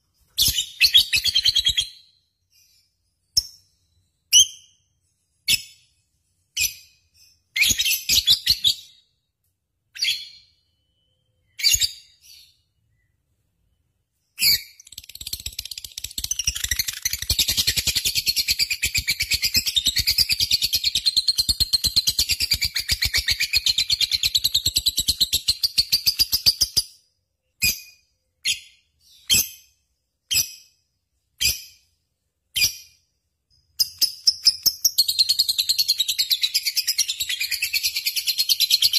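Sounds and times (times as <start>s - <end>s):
lovebird chirping and chattering: 0.2s - 4.8s, 6.5s - 9.0s, 11.4s - 12.6s, 14.3s - 30.8s, 32.5s - 38.9s.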